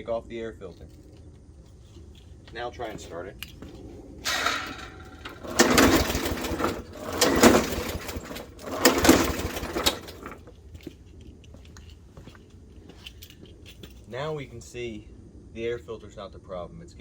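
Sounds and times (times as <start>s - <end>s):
mower recoil starter pulls: 4.2s - 10.5s.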